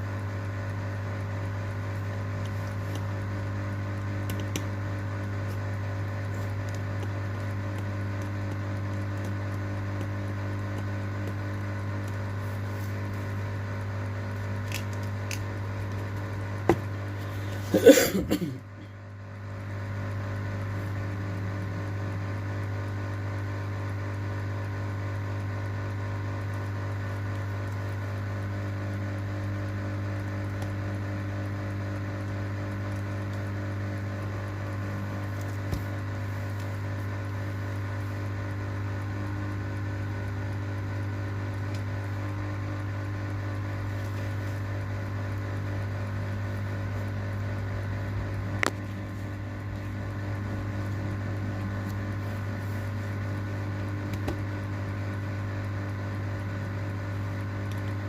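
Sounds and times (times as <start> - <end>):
electric machine hum: 0.0 - 58.0.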